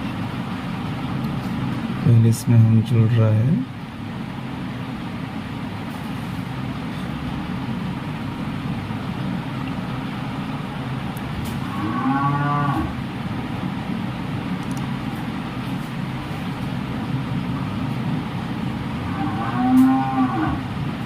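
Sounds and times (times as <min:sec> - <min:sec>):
low background hum: 0:00.0 - 0:21.0
cow mooing: 0:11.6 - 0:13.0, 0:19.0 - 0:20.7.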